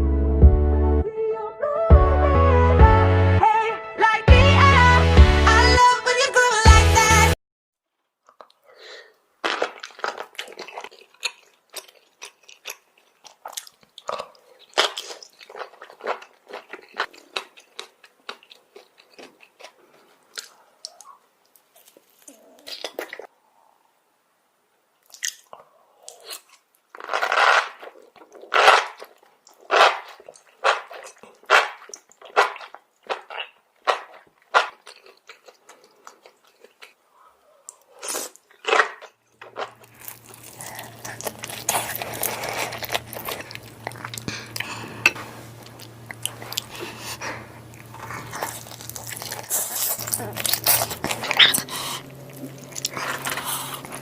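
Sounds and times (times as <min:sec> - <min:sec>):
crunchy chewing: 0:08.2 - 0:23.3, 0:25.0 - 0:54.0
low hum and hiss: 0:39.8 - 0:54.0.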